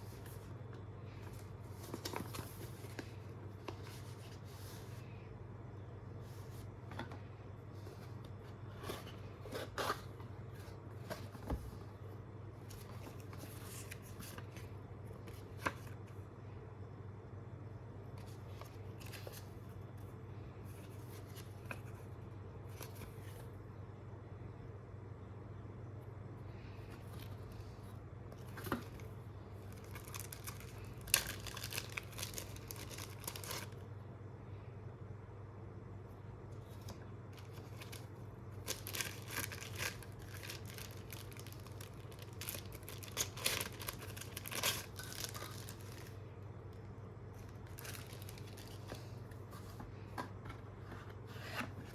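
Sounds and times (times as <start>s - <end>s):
packaging crinkling and rustling: 28.4s - 33.8s, 36.6s - 46.2s, 47.3s - 50.0s
packaging crackling and snapping: 29.7s - 33.8s, 37.4s - 46.2s, 47.4s - 48.8s.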